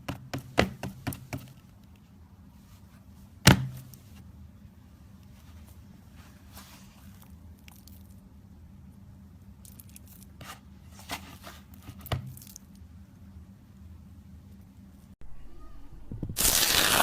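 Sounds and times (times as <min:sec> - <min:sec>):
slime crackling and tearing: 0:16.4 - 0:17.0.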